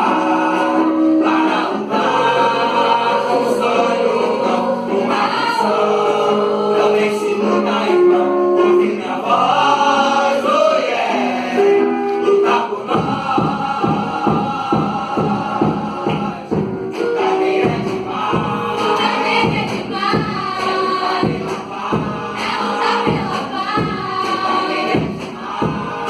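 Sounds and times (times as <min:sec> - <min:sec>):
choir singing: 0:00.0 - 0:26.0
musical backing: 0:00.0 - 0:26.0.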